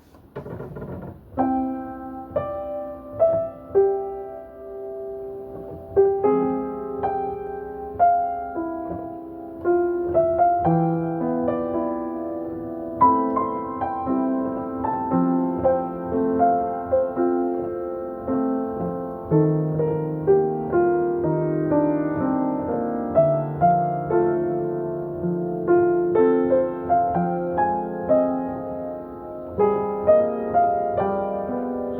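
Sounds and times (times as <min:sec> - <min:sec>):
slow solo piano ballad: 0:00.0 - 0:31.9.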